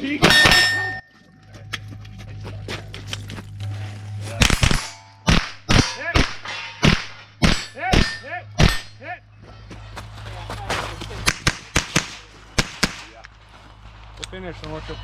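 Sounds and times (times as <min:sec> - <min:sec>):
steady low hum: 0:00.0 - 0:15.0
rifle shots cracking: 0:11.3 - 0:13.2.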